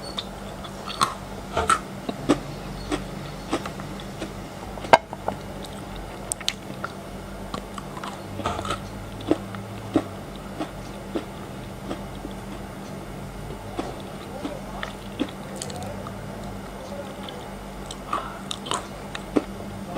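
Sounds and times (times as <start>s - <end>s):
chewing crunches: 0.0s - 19.6s
chocolate cracking: 3.6s - 11.3s, 13.8s - 16.2s.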